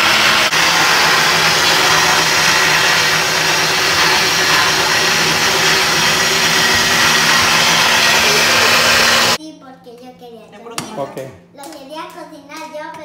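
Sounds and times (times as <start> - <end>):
electric blender grinding: 0.0 - 9.4.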